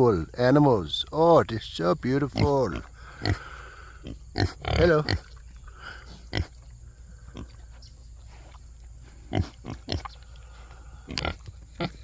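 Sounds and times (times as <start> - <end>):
pigs grunting: 2.2 - 12.0.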